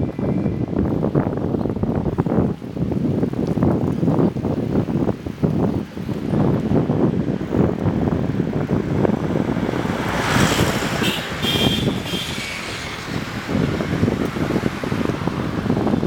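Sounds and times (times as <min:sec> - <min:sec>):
wind buffeting microphone: 0:00.0 - 0:16.0
vehicle passing: 0:08.1 - 0:15.9.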